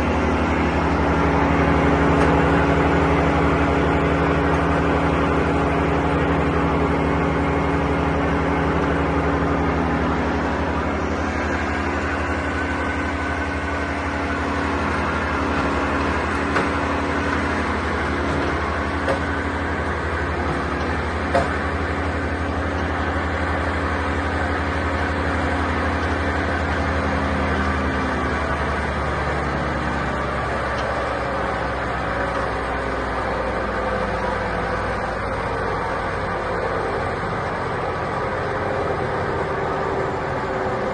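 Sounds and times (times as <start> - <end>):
wood chipper engine idling: 0.0 - 40.9.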